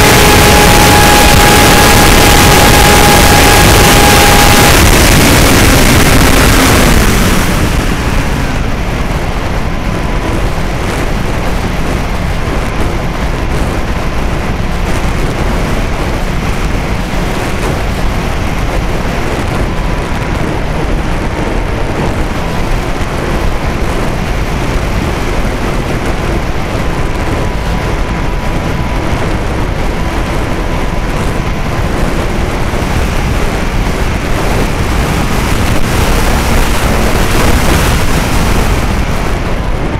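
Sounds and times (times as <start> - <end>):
model plane motor whine: 0.0 - 7.8
wind buffeting microphone: 0.0 - 39.9.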